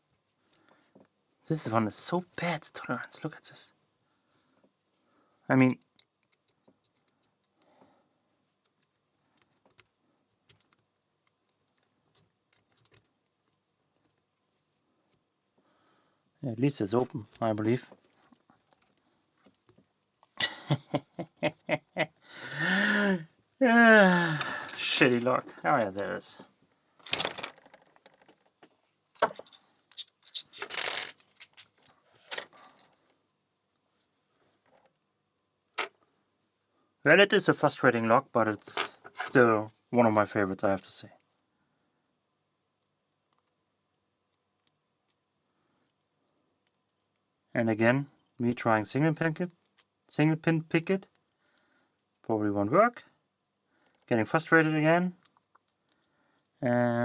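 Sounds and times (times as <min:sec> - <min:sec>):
padlock and lock picks clinking: 0:24.4 - 0:25.9, 0:29.1 - 0:33.0.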